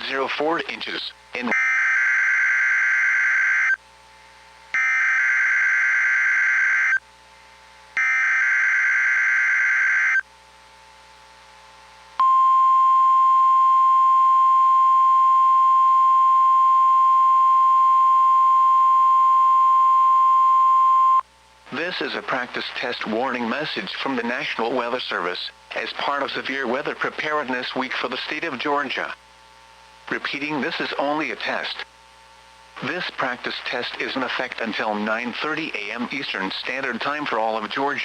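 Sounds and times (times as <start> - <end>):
long warning alarm beep: 4.8 - 7.0, 8.0 - 10.2, 12.2 - 21.2.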